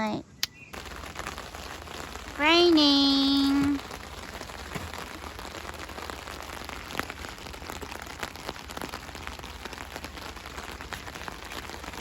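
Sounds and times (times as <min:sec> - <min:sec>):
rain drops ticking on surface: 0:00.0 - 0:12.0.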